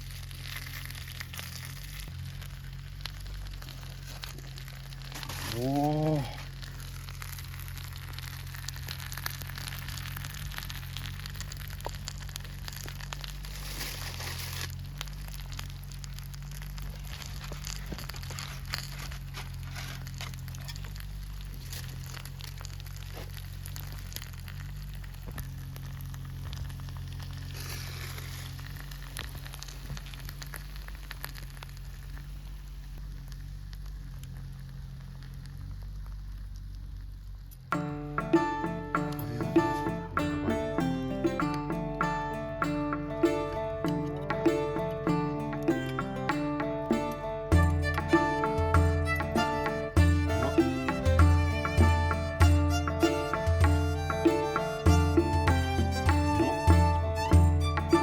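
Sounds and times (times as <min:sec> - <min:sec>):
bacon and eggs sizzling in a pan: 0:00.0 - 0:05.2, 0:06.5 - 0:32.9
burning log crackling: 0:00.0 - 0:58.0.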